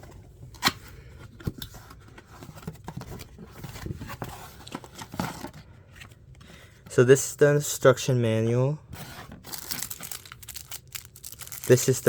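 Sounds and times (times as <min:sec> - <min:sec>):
packaging rustling and tapping: 0:09.4 - 0:12.0.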